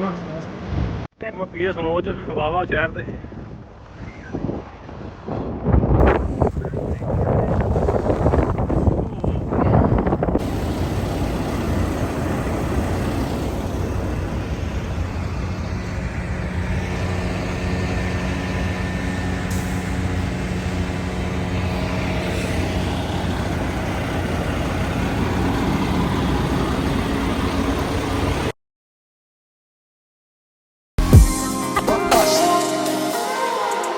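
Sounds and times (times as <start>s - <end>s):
road noise: 6.0s - 28.5s
truck engine rumbling: 6.0s - 28.5s.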